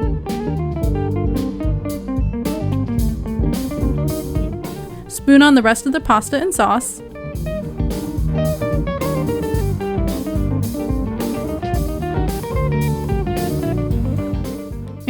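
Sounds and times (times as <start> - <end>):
guitar instrumental with beat and bass: 0.0 - 15.0.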